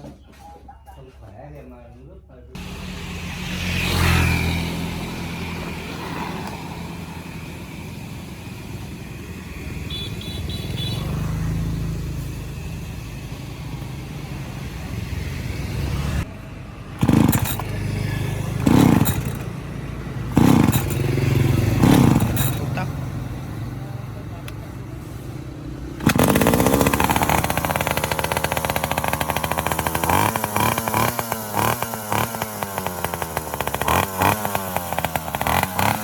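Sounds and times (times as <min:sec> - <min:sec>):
chainsaw engine running: 0:02.6 - 0:10.0, 0:17.0 - 0:24.6, 0:25.9 - 0:36.0
short loud engine bursts: 0:17.0 - 0:19.6, 0:20.3 - 0:23.0, 0:26.0 - 0:36.0.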